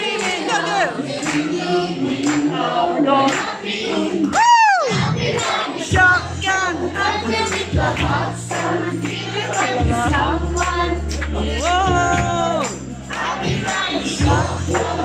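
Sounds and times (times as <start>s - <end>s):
voices singing: 0.0s - 15.0s
low bass notes: 5.9s - 15.0s.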